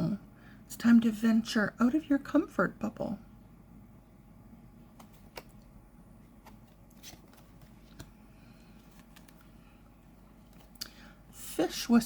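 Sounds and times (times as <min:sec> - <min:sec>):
cards clicking and rustling: 0:04.9 - 0:05.6, 0:06.4 - 0:09.6.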